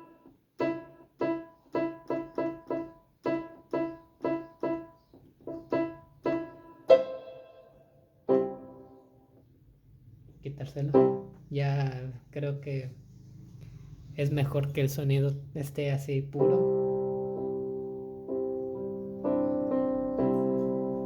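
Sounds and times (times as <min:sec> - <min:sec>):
keyboard piano melody: 0:00.0 - 0:09.8, 0:10.8 - 0:11.7, 0:16.2 - 0:21.0.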